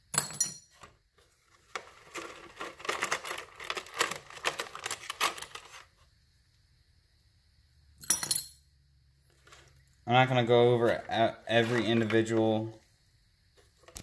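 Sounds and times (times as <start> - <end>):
metal bolts clinking: 0.1 - 0.8, 8.0 - 8.6.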